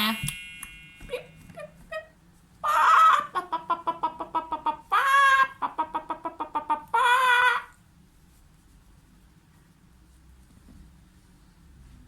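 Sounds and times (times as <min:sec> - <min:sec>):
hen cackling: 0:02.6 - 0:07.8.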